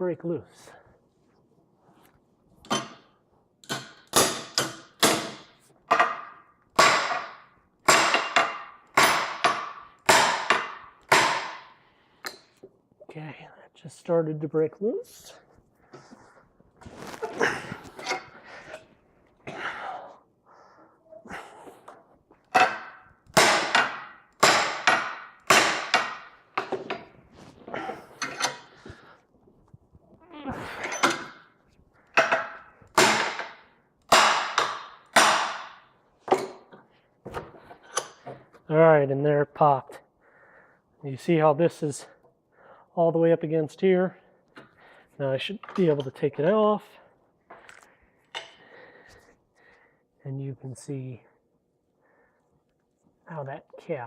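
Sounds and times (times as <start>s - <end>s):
hammer striking metal: 22.6s - 26.3s.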